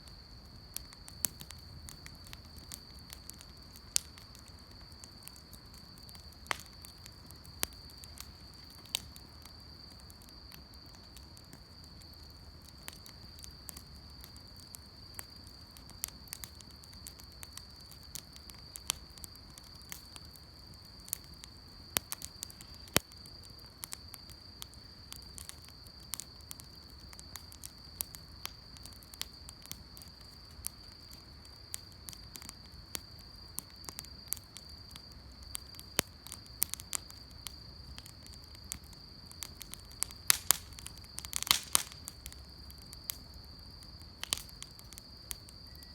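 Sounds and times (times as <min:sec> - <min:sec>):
campfire crackling: 0:00.0 - 0:45.9
fire popping: 0:00.0 - 0:45.9.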